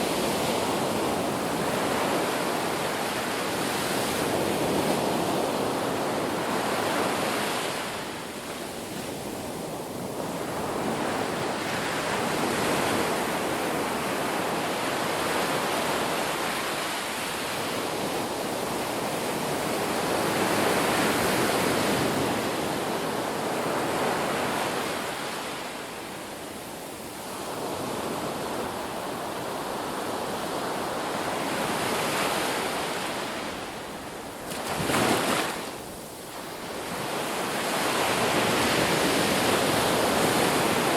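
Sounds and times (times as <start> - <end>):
ocean waves breaking on beach: 0.0 - 40.9.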